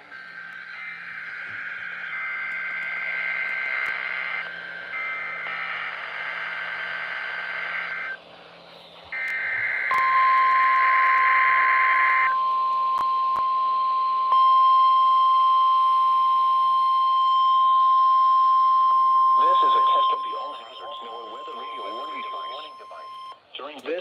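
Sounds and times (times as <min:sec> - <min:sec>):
steady warning alarm tone: 0:00.0 - 0:08.2, 0:09.1 - 0:23.4.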